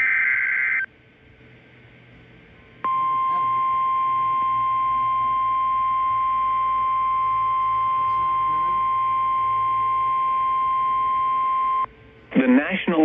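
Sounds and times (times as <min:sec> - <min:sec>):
steady high alarm beep: 0:00.0 - 0:00.9, 0:02.9 - 0:11.9.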